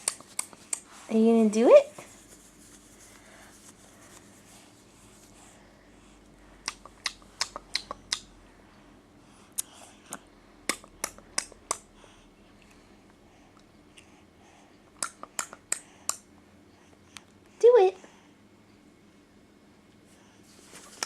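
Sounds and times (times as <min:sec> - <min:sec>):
baby clicking with mouth: 0:00.0 - 0:00.9, 0:06.6 - 0:08.3, 0:09.6 - 0:11.8, 0:15.0 - 0:16.2.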